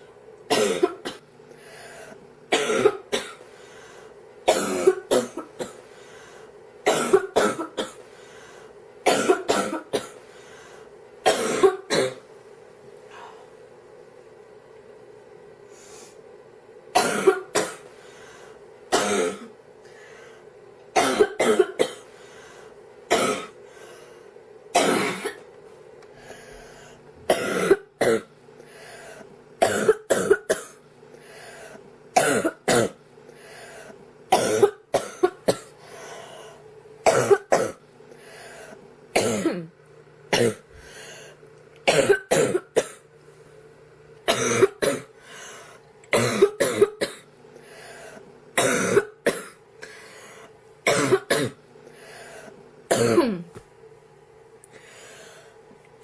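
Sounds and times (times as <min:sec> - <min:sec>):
girl coughing: 0:00.5 - 0:01.2, 0:02.5 - 0:03.4, 0:04.5 - 0:05.8, 0:06.9 - 0:08.0, 0:09.0 - 0:10.2, 0:11.3 - 0:12.2, 0:17.0 - 0:17.9, 0:18.9 - 0:19.5, 0:21.0 - 0:22.1, 0:23.1 - 0:23.6, 0:24.8 - 0:25.4, 0:27.3 - 0:28.3, 0:29.6 - 0:30.8, 0:32.2 - 0:33.0, 0:34.3 - 0:35.7, 0:37.1 - 0:37.8, 0:39.2 - 0:39.7, 0:40.3 - 0:40.6, 0:41.9 - 0:43.0, 0:44.3 - 0:45.1, 0:46.2 - 0:47.3, 0:48.6 - 0:49.6, 0:50.9 - 0:51.6, 0:52.9 - 0:53.5.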